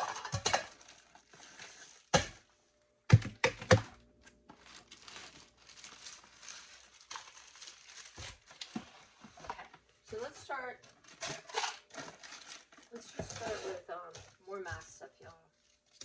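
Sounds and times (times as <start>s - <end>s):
packaging crinkling: 0.0s - 2.2s, 4.2s - 13.8s
household items knocking on hard surface: 3.1s - 4.0s.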